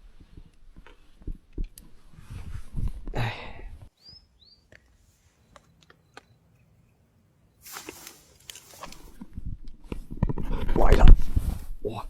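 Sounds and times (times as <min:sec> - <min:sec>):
rustling: 0:07.6 - 0:11.8.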